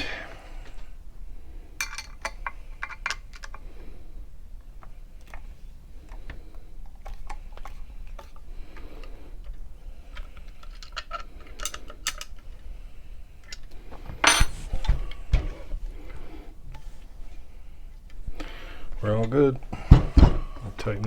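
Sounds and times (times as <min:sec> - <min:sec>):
heavy thumps: 0:19.6 - 0:21.0.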